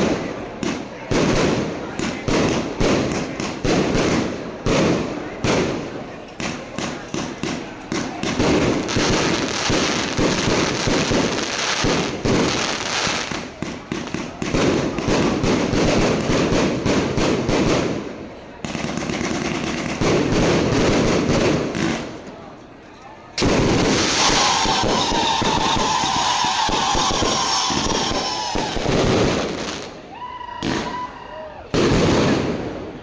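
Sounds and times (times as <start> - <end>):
fireworks crackling bangs: 0.0 - 22.5, 23.4 - 30.0, 31.7 - 33.0.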